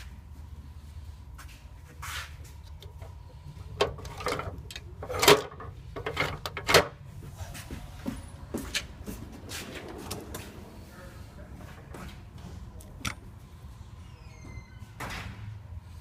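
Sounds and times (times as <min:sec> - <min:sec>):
tools clattering and knocking: 0:02.6 - 0:07.0
metal drawers opening and shutting: 0:03.7 - 0:07.0, 0:09.4 - 0:10.6, 0:14.8 - 0:15.6.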